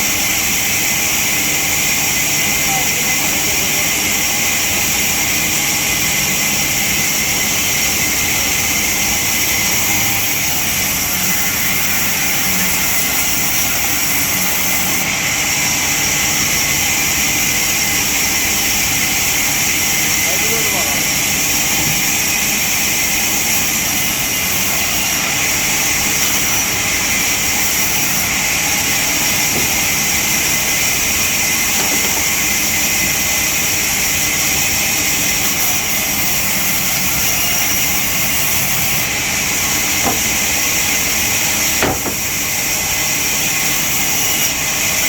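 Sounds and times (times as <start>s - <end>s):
sawmill saw hissing: 0.0s - 45.0s
sharp knocks: 29.4s - 30.1s, 31.7s - 32.4s, 40.0s - 40.5s, 41.8s - 42.4s.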